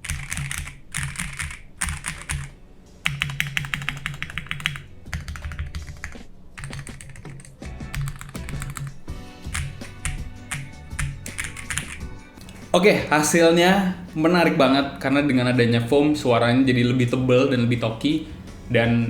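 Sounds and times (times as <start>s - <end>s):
typing on mechanical keyboard: 0.0s - 12.1s.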